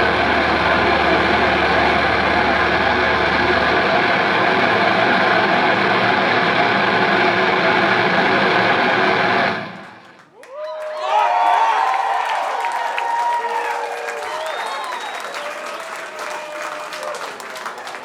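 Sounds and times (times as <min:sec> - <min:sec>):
distorted guitar and bass feedback drone: 0:00.0 - 0:10.2.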